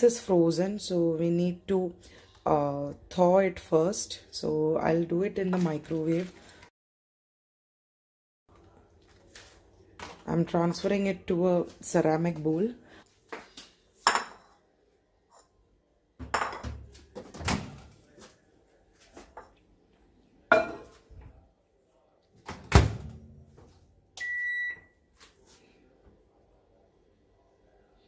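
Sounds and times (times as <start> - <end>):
microwave door knocks and thuds: 22.5 - 23.3
microwave beep: 24.2 - 25.0.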